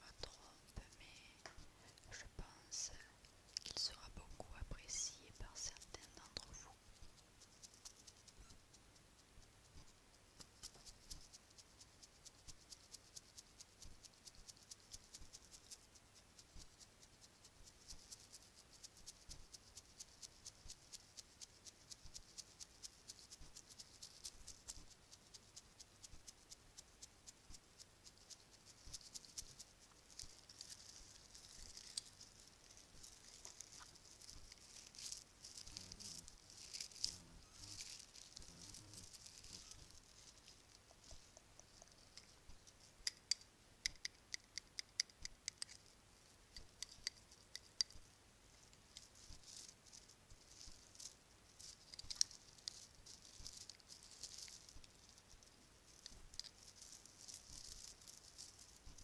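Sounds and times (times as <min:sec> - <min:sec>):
rattle: 0:27.0 - 0:45.9, 0:46.5 - 0:48.0, 0:48.7 - 0:59.0.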